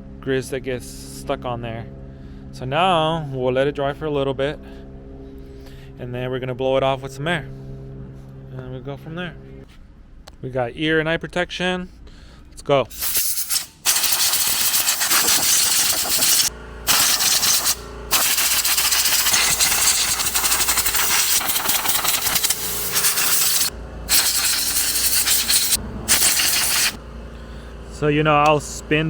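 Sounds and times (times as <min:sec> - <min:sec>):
compressed air blasts hissing: 0:12.9 - 0:27.0.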